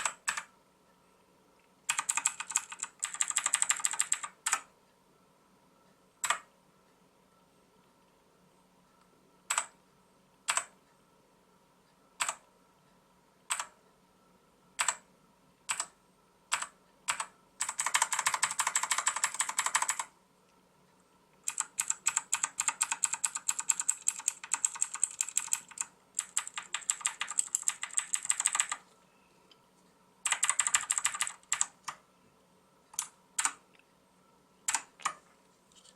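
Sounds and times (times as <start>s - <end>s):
clicky keyboard typing: 0.0s - 0.5s, 1.6s - 4.7s, 6.2s - 6.5s, 9.4s - 9.8s, 10.4s - 10.8s, 12.2s - 12.5s, 13.4s - 13.8s, 14.8s - 20.2s, 21.3s - 28.9s, 30.2s - 32.0s, 32.9s - 33.9s, 34.6s - 35.9s.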